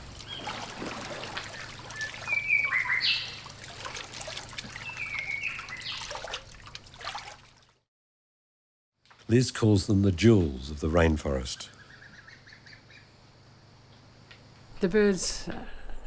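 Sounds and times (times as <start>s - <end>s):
water trickling: 0.0s - 7.8s
birds whistling: 0.2s - 3.6s, 4.7s - 6.2s, 11.5s - 13.2s.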